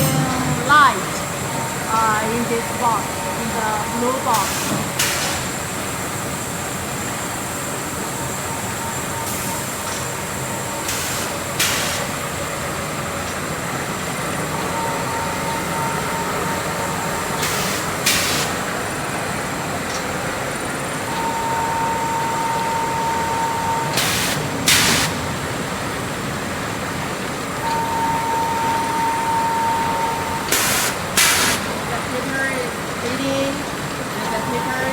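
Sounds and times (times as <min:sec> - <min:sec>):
production line machinery running: 0:00.0 - 0:34.9
short hissing bursts: 0:30.5 - 0:31.7.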